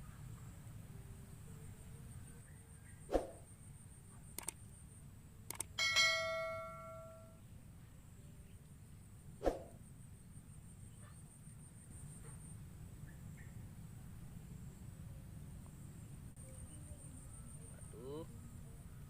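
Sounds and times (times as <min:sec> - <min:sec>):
faint high whine: 0:00.0 - 0:19.0
small clicks: 0:04.4 - 0:04.6, 0:05.5 - 0:05.8
bright bell-like ding: 0:05.8 - 0:07.4.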